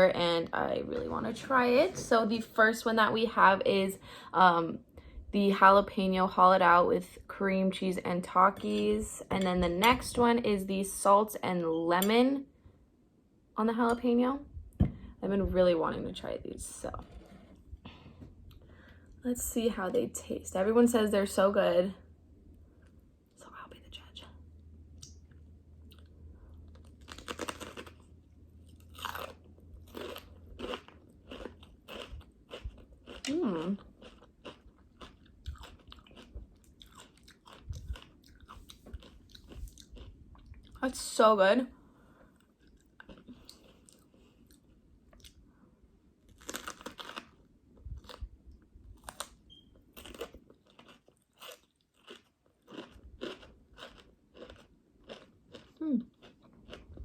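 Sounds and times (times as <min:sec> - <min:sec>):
crunchy biting and chewing: 0:26.8 - 0:40.8, 0:46.3 - 0:48.3, 0:49.0 - 0:57.0.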